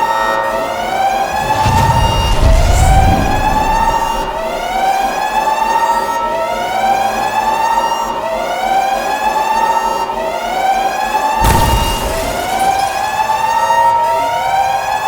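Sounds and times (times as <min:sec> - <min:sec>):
siren rising sweeps: 0:00.7 - 0:05.4.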